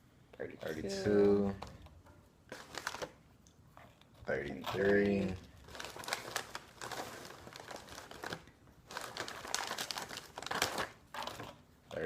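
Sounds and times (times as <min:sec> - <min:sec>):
snack bag crinkling: 0:02.5 - 0:03.2, 0:04.5 - 0:11.6.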